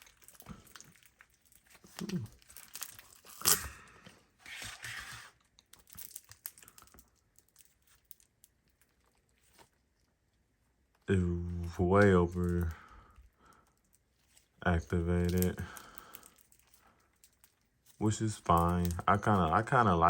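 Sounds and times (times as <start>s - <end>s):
foam slime crackling and tearing: 0.0s - 3.6s, 4.5s - 10.0s, 14.0s - 20.0s.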